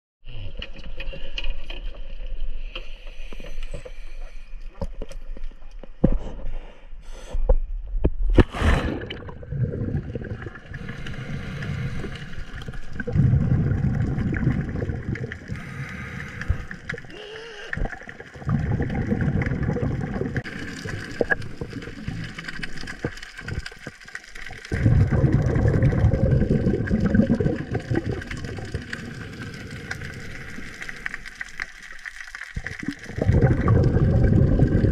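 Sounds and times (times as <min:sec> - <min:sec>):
water gurgling and sloshing: 0:07.8 - 0:34.9.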